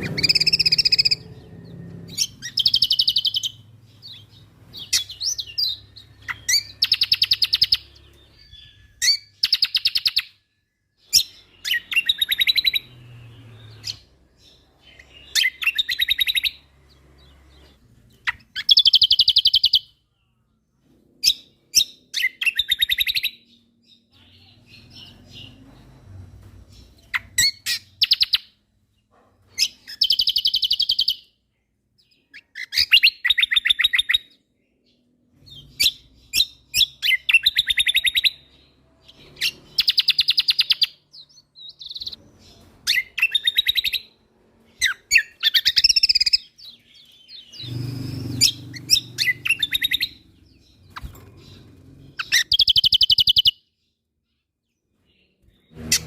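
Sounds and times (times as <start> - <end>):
bird singing rattling trills: 0.0 - 20.3, 29.5 - 31.3, 35.4 - 53.7.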